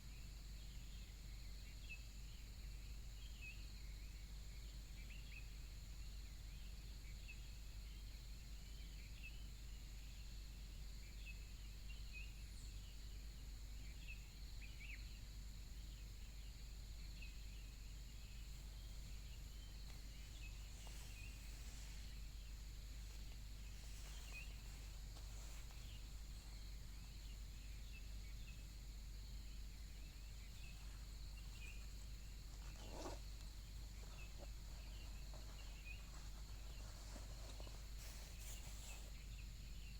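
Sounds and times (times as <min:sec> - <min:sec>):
low constant hum: 0:00.0 - 0:39.9
insect chorus trilling: 0:11.1 - 0:39.9.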